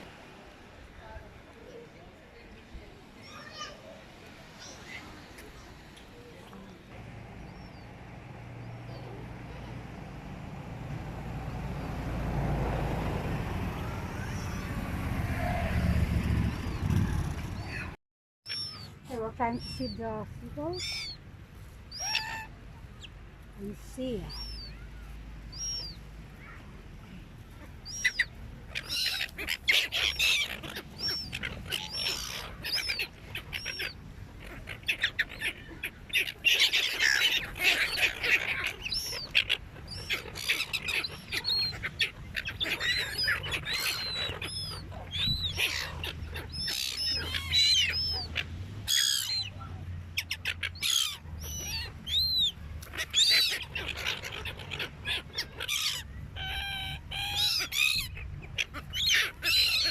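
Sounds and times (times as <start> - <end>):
seagulls squawking: 13.8 - 17.0, 18.5 - 21.2, 21.9 - 26.7, 27.5 - 59.9.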